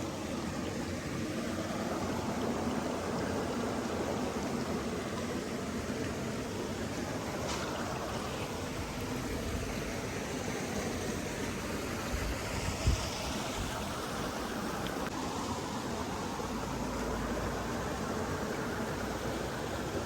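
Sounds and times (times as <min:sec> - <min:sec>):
stream water rushing: 0:00.0 - 0:20.0.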